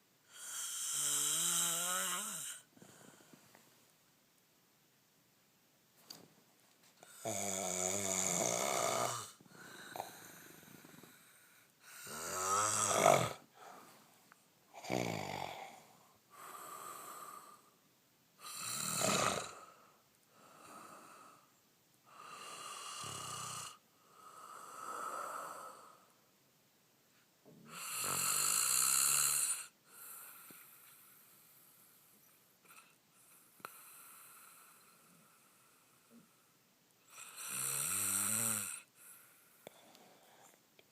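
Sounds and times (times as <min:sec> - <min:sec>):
man snoring: 0:00.3 - 0:03.2, 0:07.0 - 0:13.7, 0:14.8 - 0:17.7, 0:18.4 - 0:21.5, 0:22.1 - 0:26.0, 0:27.7 - 0:30.6, 0:37.1 - 0:38.9
soft breathing: 0:02.5 - 0:03.9, 0:09.3 - 0:12.2, 0:13.3 - 0:14.5, 0:38.9 - 0:40.9.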